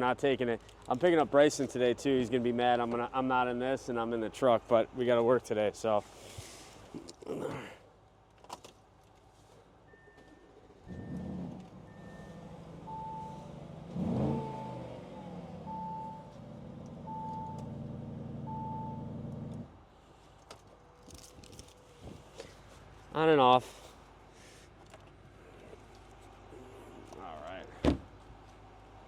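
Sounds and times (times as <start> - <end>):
low car beeps: 9.8 - 19.6
car chimes: 9.9 - 19.2
car engine starting and idling: 9.9 - 19.8.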